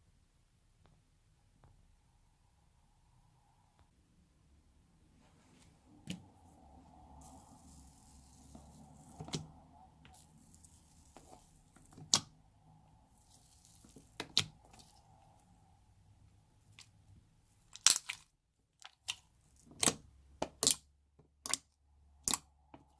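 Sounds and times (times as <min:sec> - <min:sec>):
slime squished by hand: 0:13.1 - 0:15.4, 0:17.6 - 0:22.9
slime popping: 0:13.2 - 0:15.0, 0:17.7 - 0:20.8.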